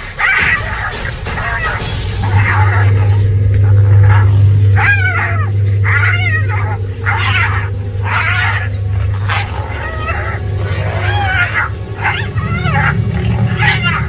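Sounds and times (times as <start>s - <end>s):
hyena squealing: 0.0s - 14.0s
low steady hum: 0.0s - 14.0s.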